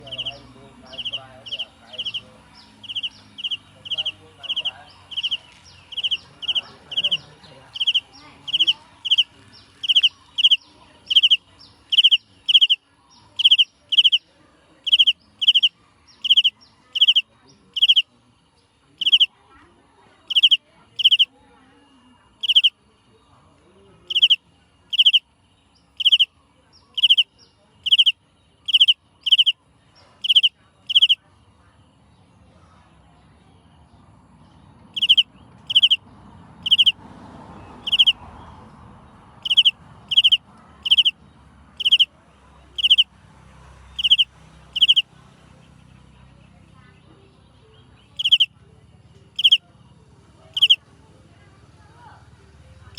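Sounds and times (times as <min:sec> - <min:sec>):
small animal shrill call: 0:00.9 - 0:12.8, 0:13.4 - 0:14.2, 0:14.9 - 0:17.2, 0:17.8 - 0:18.0, 0:19.0 - 0:19.3, 0:20.3 - 0:21.3, 0:22.4 - 0:22.7, 0:24.1 - 0:25.2, 0:26.0 - 0:26.3, 0:26.9 - 0:29.5, 0:30.2 - 0:31.2, 0:35.0 - 0:36.0, 0:36.6 - 0:37.0, 0:37.8 - 0:38.2, 0:39.4 - 0:41.2, 0:41.8 - 0:42.1, 0:42.8 - 0:43.1, 0:44.0 - 0:45.1, 0:48.2 - 0:48.5, 0:49.4 - 0:49.6, 0:50.6 - 0:50.8.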